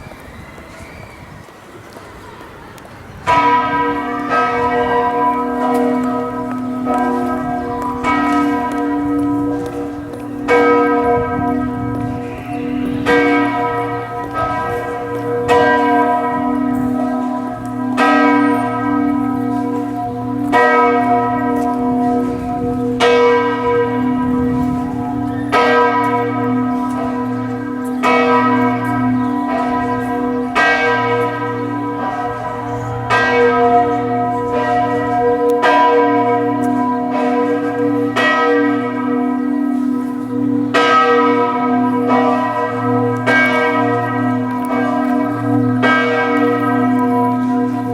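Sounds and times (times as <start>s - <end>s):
church bells ringing: 2.0s - 47.9s.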